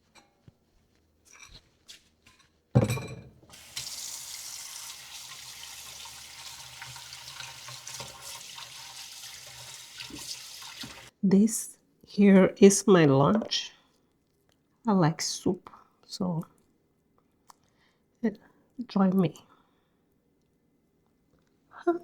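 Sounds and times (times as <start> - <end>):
tap water running into sink: 3.5 - 11.1.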